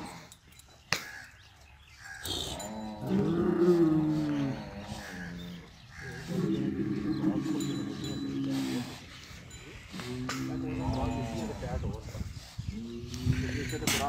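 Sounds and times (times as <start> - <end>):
cattle mooing: 2.2 - 8.9.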